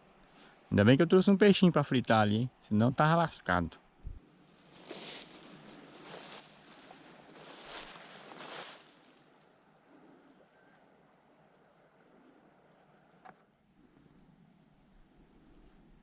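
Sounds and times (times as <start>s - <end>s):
insects trilling: 0.0s - 16.0s
rustling noise: 4.5s - 9.3s.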